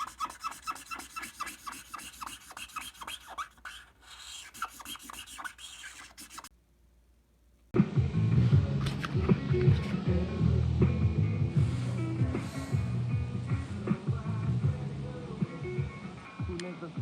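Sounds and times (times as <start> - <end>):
rasping strokes on wood: 0.0 - 6.5.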